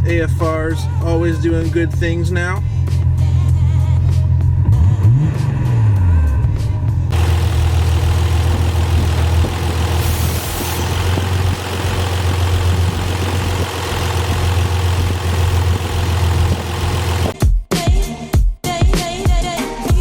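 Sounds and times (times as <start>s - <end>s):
car engine running: 1.7s - 17.4s.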